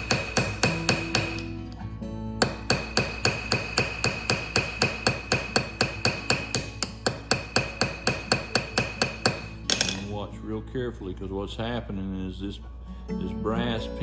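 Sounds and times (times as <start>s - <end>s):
small hammer tapping brass pin: 0.0s - 1.5s, 2.4s - 10.1s.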